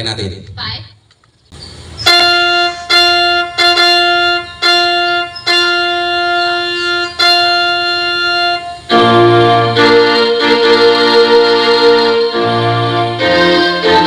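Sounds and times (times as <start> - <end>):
keyboard chords: 2.0 - 14.0
repeated bright instrument note: 2.0 - 14.0.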